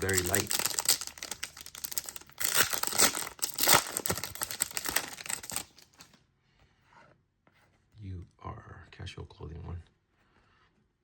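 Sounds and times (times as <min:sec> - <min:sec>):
foil wrapper tearing and crinkling: 0:00.0 - 0:06.0.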